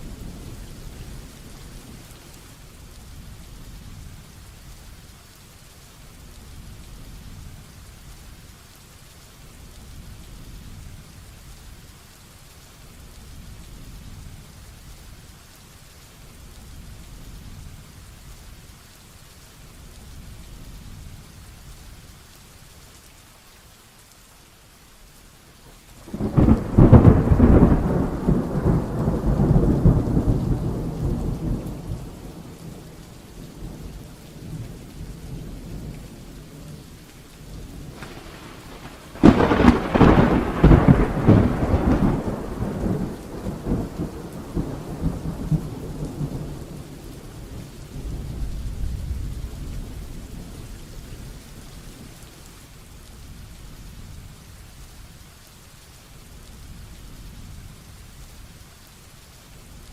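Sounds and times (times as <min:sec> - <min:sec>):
heavy rain falling: 0:00.0 - 0:59.9
thunderclaps rumbling: 0:26.0 - 0:52.2.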